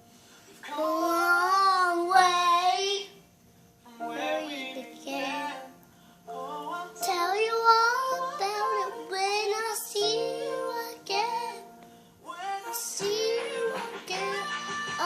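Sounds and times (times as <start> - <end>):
child singing: 0.7 - 3.2, 4.0 - 5.7, 6.8 - 11.7, 12.5 - 15.0
backing music: 3.9 - 15.0.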